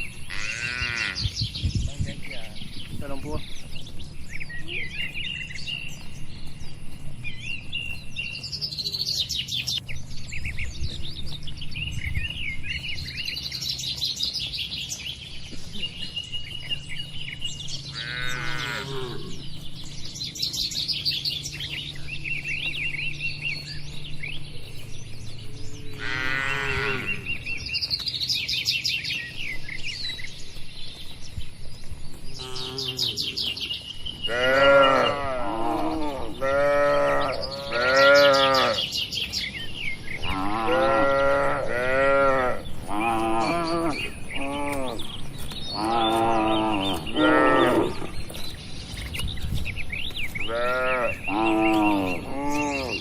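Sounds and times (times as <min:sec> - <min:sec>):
small birds chirping: 0:00.0 - 0:53.0
cattle mooing: 0:00.3 - 0:01.2, 0:17.9 - 0:19.4, 0:25.9 - 0:27.3, 0:32.4 - 0:33.4, 0:34.2 - 0:38.9, 0:40.2 - 0:45.1, 0:45.8 - 0:48.2, 0:50.4 - 0:53.0.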